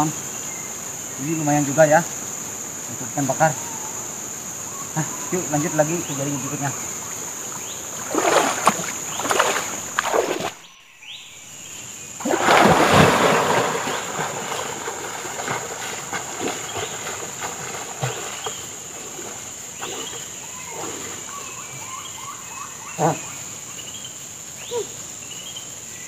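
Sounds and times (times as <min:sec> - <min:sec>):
water splashing and sloshing: 0:06.5 - 0:10.7, 0:12.2 - 0:21.5.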